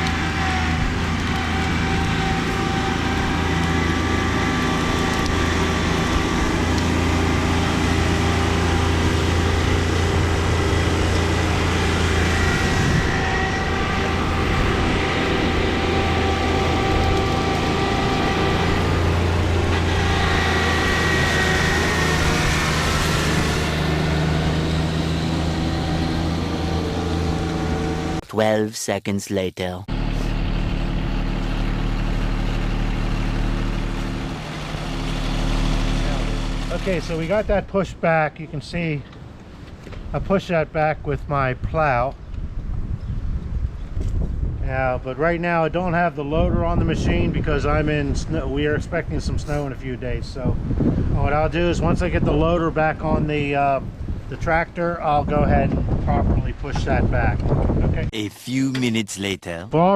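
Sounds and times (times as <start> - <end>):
tractor diesel engine running: 0.0 - 28.2, 29.9 - 37.5.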